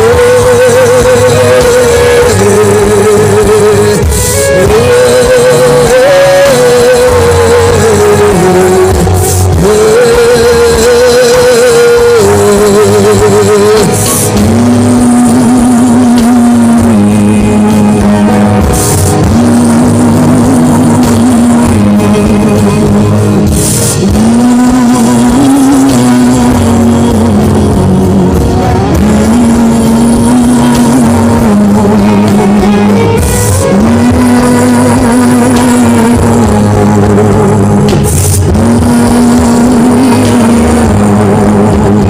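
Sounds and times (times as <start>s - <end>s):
low instrumental accompaniment: 0.0s - 42.0s
wavering lead melody: 0.0s - 42.0s.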